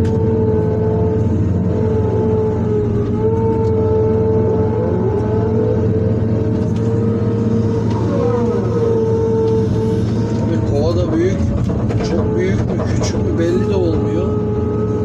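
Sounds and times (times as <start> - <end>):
diesel engine under load: 0.0 - 15.0
strong whine bending in pitch: 0.0 - 15.0.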